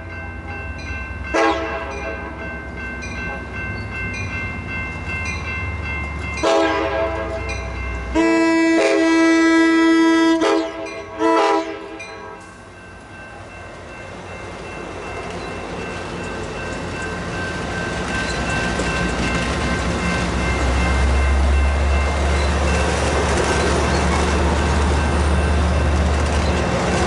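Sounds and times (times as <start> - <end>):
low rumble of moving train: 0.0 - 27.0
train horn blasts: 1.3 - 2.3, 6.4 - 7.5, 8.1 - 12.6.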